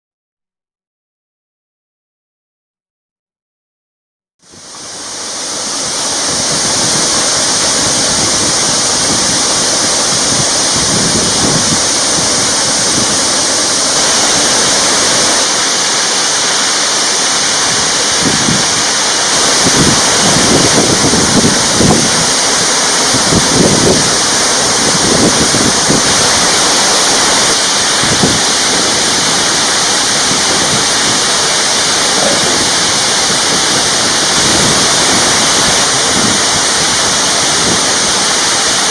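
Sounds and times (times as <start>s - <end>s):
waterfall rushing: 4.4s - 38.9s.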